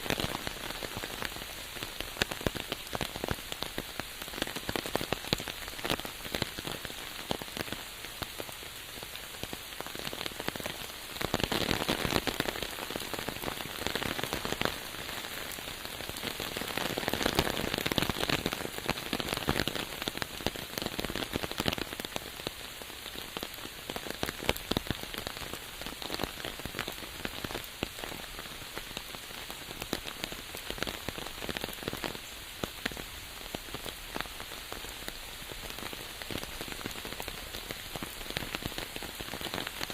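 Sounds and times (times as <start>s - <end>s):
rain falling on a surface: 0.0s - 39.9s.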